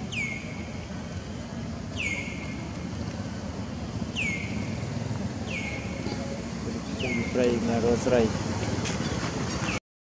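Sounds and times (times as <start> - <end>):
low rumble of wind or traffic: 0.0 - 9.8.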